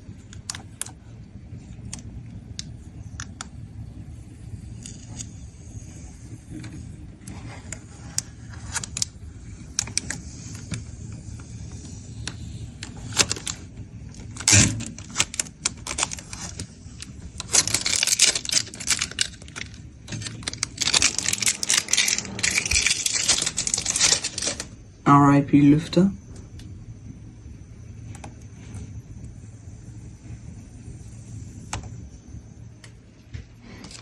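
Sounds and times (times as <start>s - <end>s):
small hard objects clattering: 13.1s - 24.8s.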